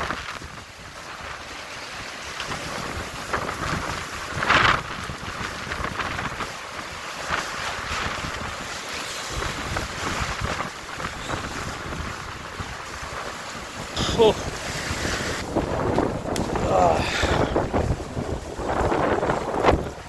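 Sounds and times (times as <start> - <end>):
wind buffeting microphone: 0.0 - 20.0
strong wind gusting: 2.4 - 20.0.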